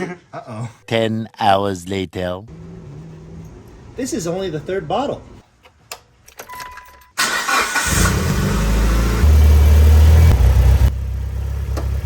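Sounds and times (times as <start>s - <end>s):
car engine cranking: 7.2s - 10.9s
car engine idling: 7.2s - 12.0s.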